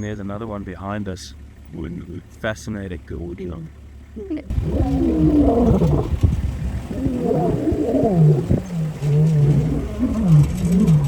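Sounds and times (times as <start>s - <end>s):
deep grunting calls: 4.1s - 11.0s
lions roaring: 4.5s - 11.0s.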